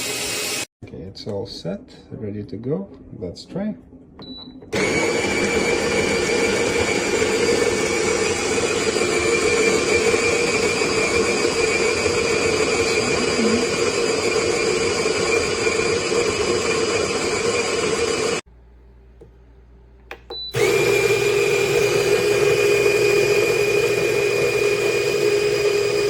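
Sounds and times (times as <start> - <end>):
electric coffee grinder whirring: 0.0 - 0.7, 4.7 - 18.4, 20.5 - 26.0.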